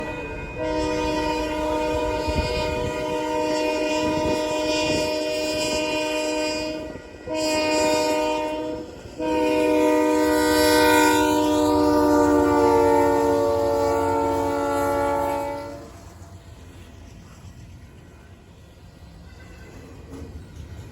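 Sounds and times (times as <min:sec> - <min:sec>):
locomotive horn blasts: 0:00.0 - 0:16.2
low train rumble: 0:00.0 - 0:20.9.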